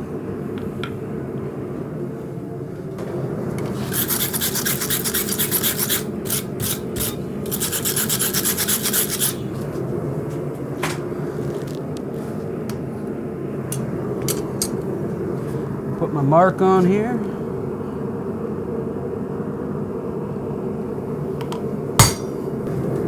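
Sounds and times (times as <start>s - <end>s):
steady low hum: 0.0s - 23.0s
hand scraping steel blade: 3.8s - 9.4s, 22.0s - 22.4s.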